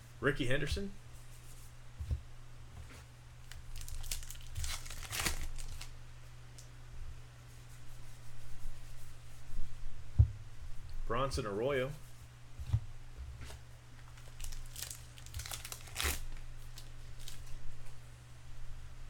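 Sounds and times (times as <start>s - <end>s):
cards and wrapper rustling: 3.5s - 5.9s, 14.0s - 17.6s.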